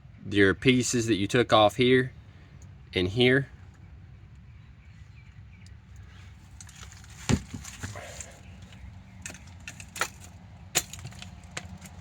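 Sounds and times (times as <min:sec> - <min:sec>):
brake pads clicking and knocking: 0:06.6 - 0:12.0.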